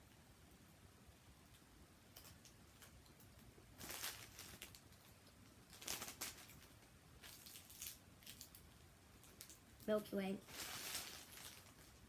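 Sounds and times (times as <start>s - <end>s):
candy wrapper crinkling: 3.8s - 12.0s.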